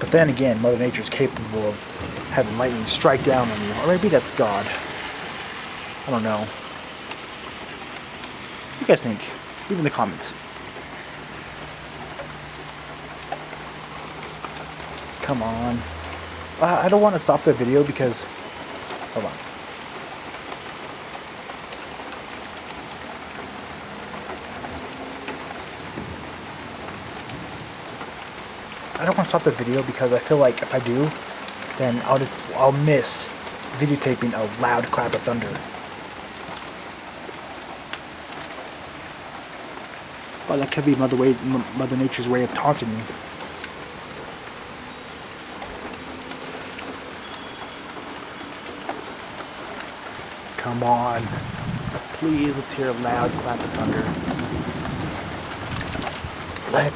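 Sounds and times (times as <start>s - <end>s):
heavy rain pouring: 0.0s - 56.9s
individual raindrop ticks: 0.0s - 56.9s.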